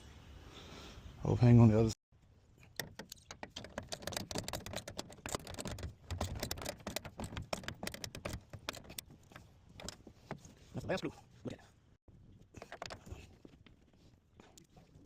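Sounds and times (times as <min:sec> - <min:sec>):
hand tools clicking and rattling: 0:02.6 - 0:10.5.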